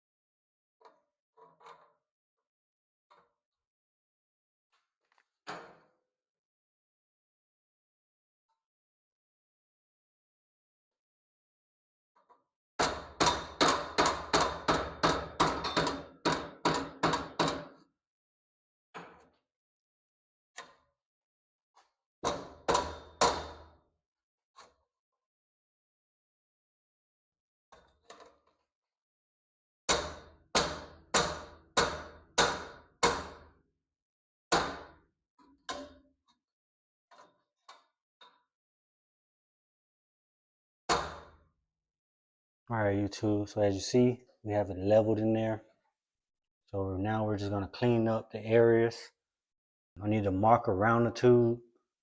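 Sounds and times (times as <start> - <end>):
hammer striking metal bar: 12.8 - 17.7, 22.3 - 23.6, 29.9 - 33.4.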